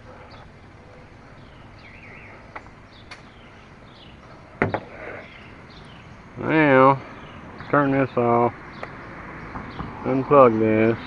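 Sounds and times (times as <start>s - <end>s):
birds chirping: 0.0s - 11.0s
sharp knock: 4.6s - 5.0s.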